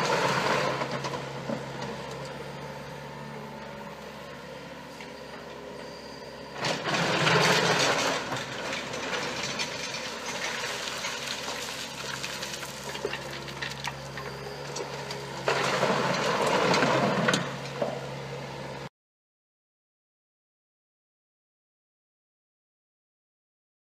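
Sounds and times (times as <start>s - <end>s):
excavator diesel engine: 0.0s - 18.9s.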